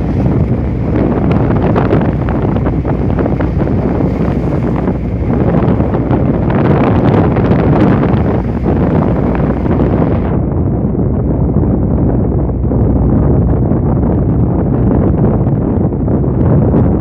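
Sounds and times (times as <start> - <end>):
rough sea waves: 0.0 - 17.0
strong wind buffeting microphone: 0.0 - 17.0.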